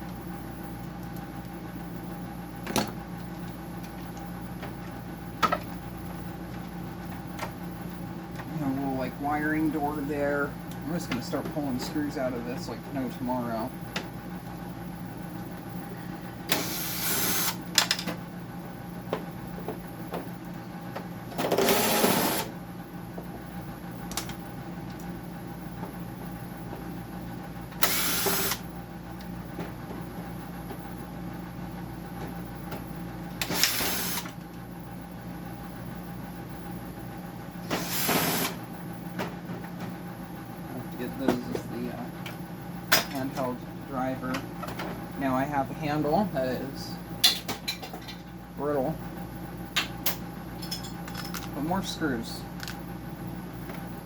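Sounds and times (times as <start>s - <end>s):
power screwdriver motor: 27.8s - 28.6s, 33.4s - 34.3s.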